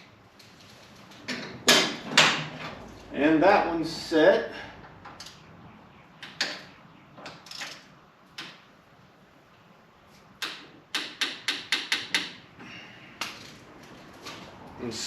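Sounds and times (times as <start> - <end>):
hand ratchet clicking: 10.4 - 12.4.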